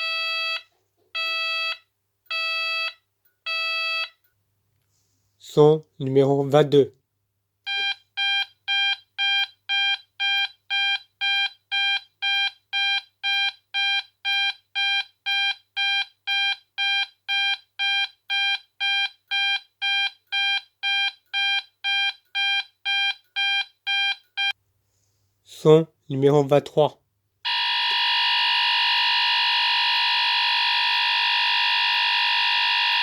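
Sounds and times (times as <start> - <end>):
fire alarm sounder pulsing: 27.5 - 33.0.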